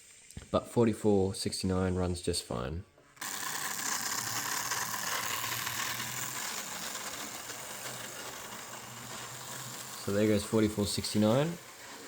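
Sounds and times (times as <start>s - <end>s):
model train running on track: 3.2s - 12.0s.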